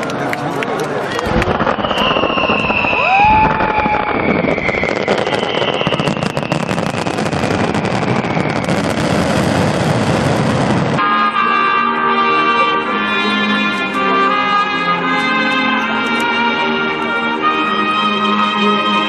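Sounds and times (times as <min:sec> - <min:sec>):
fireworks crackling: 0:01.0 - 0:11.0
fireworks whistling: 0:01.2 - 0:11.0
brass band music: 0:11.0 - 0:19.0.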